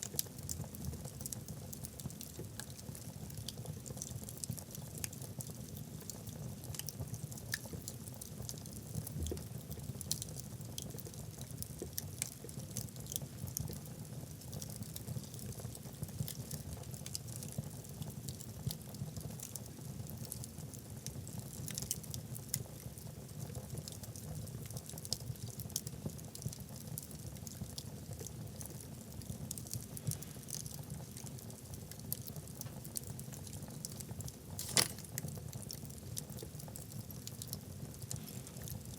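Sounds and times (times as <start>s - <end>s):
wood crackling: 34.6s - 35.2s.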